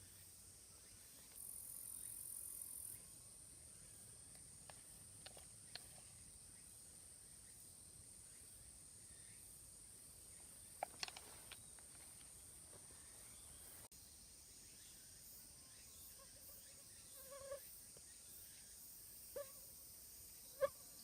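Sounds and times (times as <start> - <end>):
light clicks: 10.8 - 12.3.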